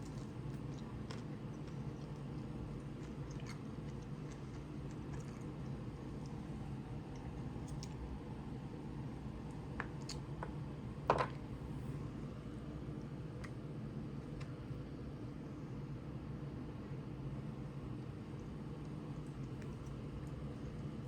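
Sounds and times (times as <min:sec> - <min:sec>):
eating sounds with small clicks: 0:00.0 - 0:10.6, 0:12.9 - 0:14.8, 0:17.9 - 0:21.0
steady low hum: 0:00.0 - 0:21.0.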